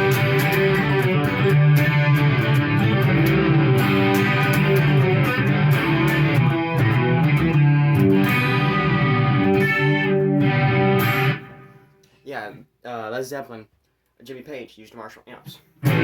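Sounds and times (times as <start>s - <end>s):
electric guitar riff: 0.0s - 12.0s, 15.8s - 16.0s.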